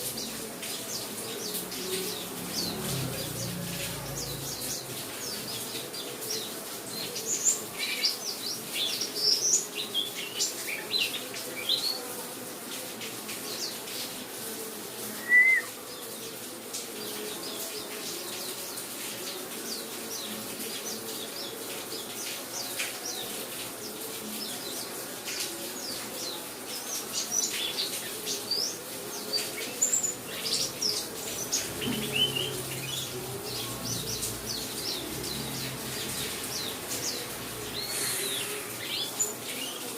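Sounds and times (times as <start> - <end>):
rain hiss: 0.0 - 39.9
bird twittering in high chirps: 15.2 - 15.7.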